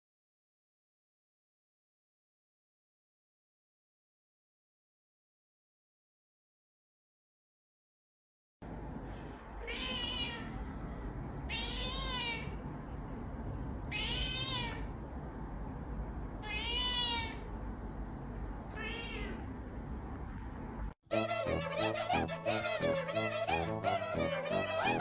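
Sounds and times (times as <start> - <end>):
low steady background noise: 8.6 - 21.0
cat meowing: 9.6 - 12.6, 13.9 - 14.9, 16.4 - 17.5, 18.7 - 19.5
music: 21.1 - 25.0.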